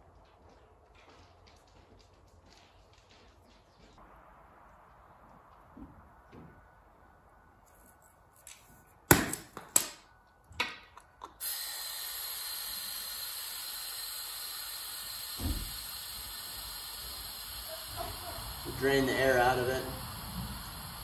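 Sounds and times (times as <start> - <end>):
air hissing from tire valve: 11.2 - 21.0.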